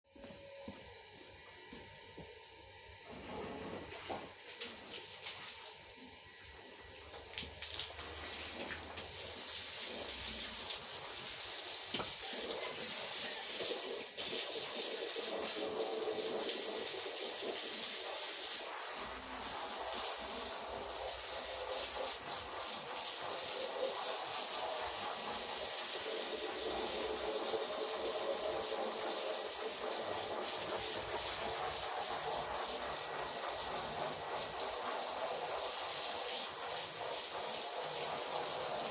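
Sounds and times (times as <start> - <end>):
rotary brush scrubbing wet carpet: 8.0 - 38.9.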